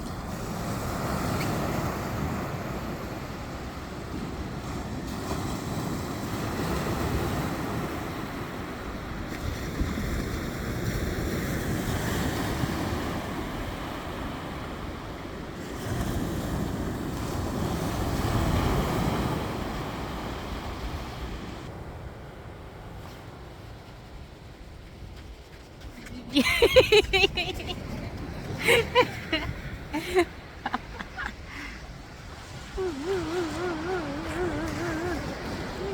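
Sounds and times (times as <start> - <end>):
wind buffeting microphone: 22.7 - 35.9
sea waves breaking: 25.8 - 35.9.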